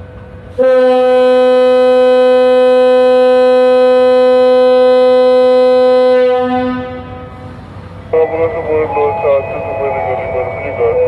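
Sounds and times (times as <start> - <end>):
locomotive horn blast: 0.6 - 7.6.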